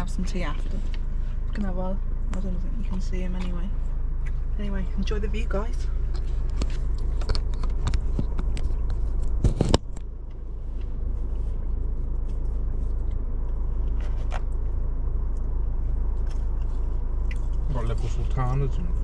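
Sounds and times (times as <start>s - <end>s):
steady low rumble: 0.0s - 19.0s
small clicks and crackles: 6.1s - 11.0s.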